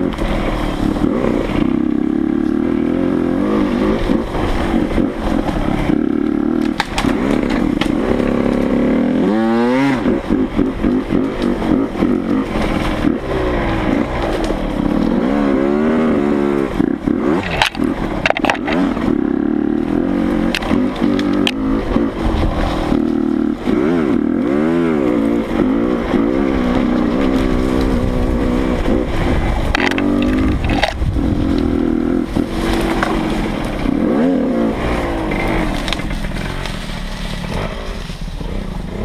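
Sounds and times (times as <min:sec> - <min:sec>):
dirt bike engine revving: 0:00.0 - 0:39.0.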